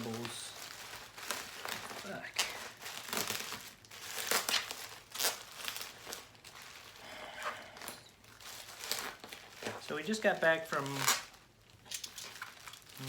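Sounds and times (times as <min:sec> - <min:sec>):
bubble wrap and plastic crinkling: 0:00.0 - 0:13.0.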